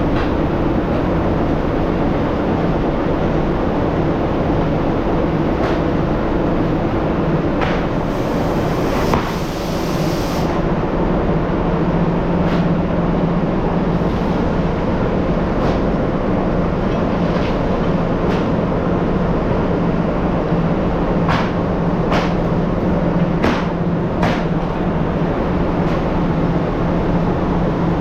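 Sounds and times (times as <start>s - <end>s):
constant low hum: 0.0s - 8.9s
factory machinery rumble: 0.0s - 28.0s.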